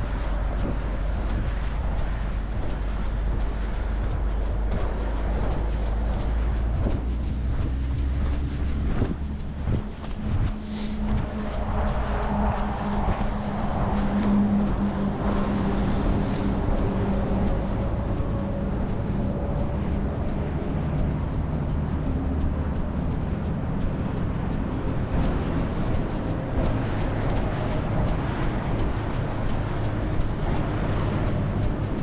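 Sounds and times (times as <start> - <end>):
vehicle engine hum: 0.0 - 32.0.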